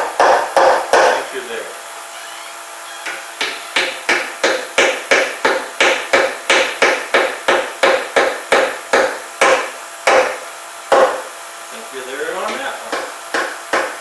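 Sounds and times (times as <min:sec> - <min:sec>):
hammer striking wooden dowel: 0:00.0 - 0:01.3, 0:03.0 - 0:11.3, 0:12.5 - 0:14.0.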